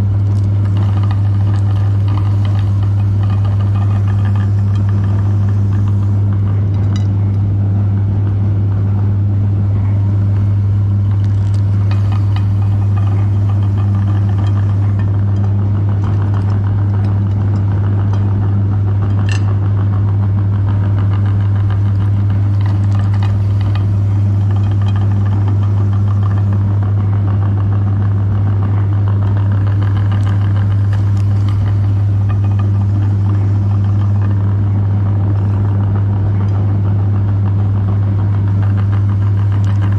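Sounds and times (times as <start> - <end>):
electric meat grinder motor: 0.0 - 6.8, 18.9 - 39.9
chocolate crunching in grinder: 0.0 - 7.5, 10.4 - 39.9.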